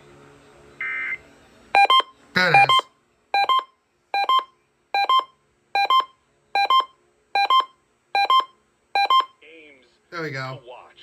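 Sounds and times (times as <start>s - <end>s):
electronic alert beeper chirping: 2.4s - 2.8s.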